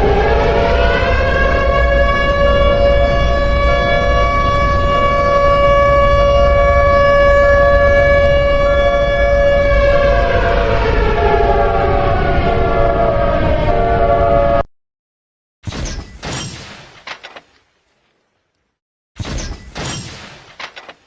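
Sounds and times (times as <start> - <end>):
warning siren long tone: 0.0 - 14.7.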